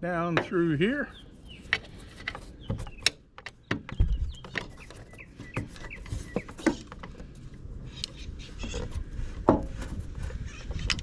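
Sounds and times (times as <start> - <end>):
dull thump: 9.4 - 10.0.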